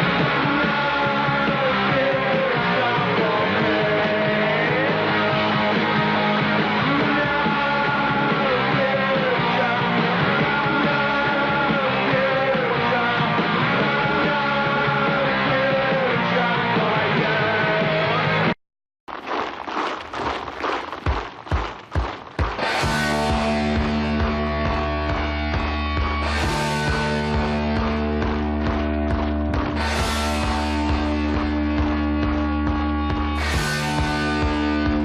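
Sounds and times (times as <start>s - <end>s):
punk rock band playing: 0.0s - 18.5s, 22.4s - 35.0s
person singing: 0.2s - 18.2s.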